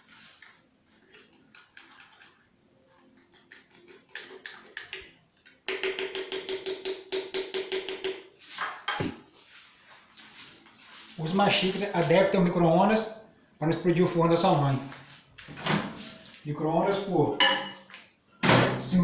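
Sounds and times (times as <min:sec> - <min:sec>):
spoon clinking against cup: 0:05.7 - 0:09.1, 0:17.4 - 0:17.9.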